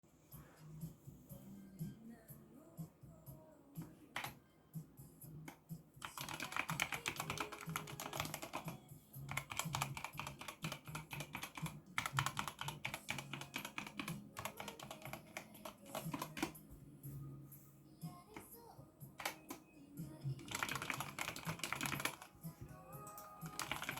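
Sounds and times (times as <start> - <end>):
mechanical keyboard typing: 5.5 - 16.6, 19.2 - 19.6, 20.4 - 22.3, 23.1 - 23.9.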